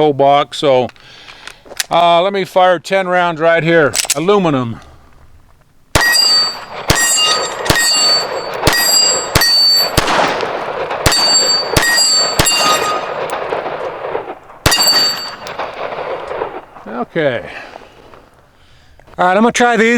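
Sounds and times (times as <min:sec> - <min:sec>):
pistol shots: 0:05.9 - 0:16.8
metallic ringing: 0:06.0 - 0:10.1, 0:11.1 - 0:13.3, 0:14.7 - 0:15.7.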